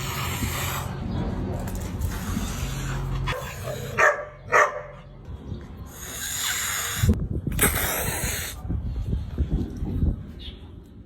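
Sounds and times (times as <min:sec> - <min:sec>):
cat hissing: 0:05.9 - 0:08.6.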